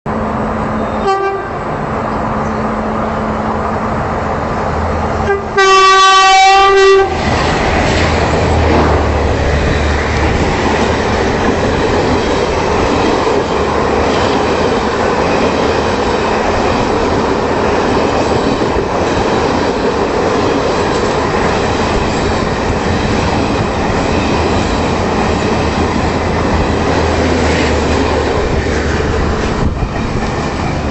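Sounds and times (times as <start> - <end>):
locomotive horn blast: 0.7 - 1.7, 5.2 - 7.3
train wheels clattering over rails: 7.2 - 30.9.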